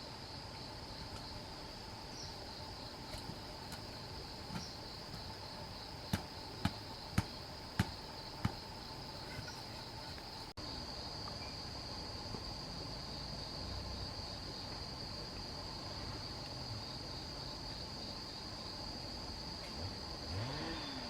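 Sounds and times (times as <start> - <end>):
crickets shrilling: 0.0 - 11.9
sharp knocks: 6.1 - 8.6.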